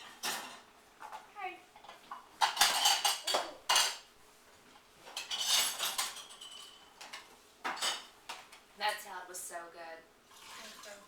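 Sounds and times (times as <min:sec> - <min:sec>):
cutlery and dishes clattering: 0:00.0 - 0:01.2, 0:01.8 - 0:04.1, 0:05.0 - 0:08.6.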